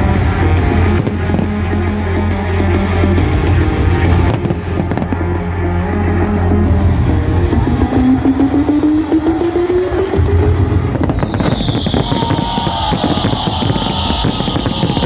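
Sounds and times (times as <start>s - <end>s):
fireworks crackling and popping: 0.0s - 2.1s, 3.3s - 5.6s, 7.6s - 15.0s
loud music: 0.0s - 15.0s.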